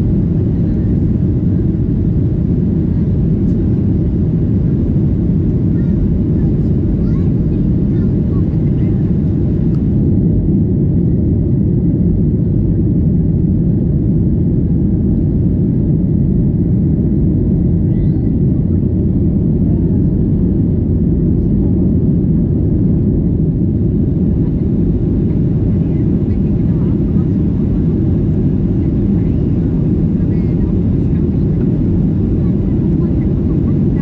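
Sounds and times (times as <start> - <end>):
airflow around fuselage: 0.0 - 10.3, 23.2 - 34.0
jet engines roaring in cabin: 0.0 - 34.0.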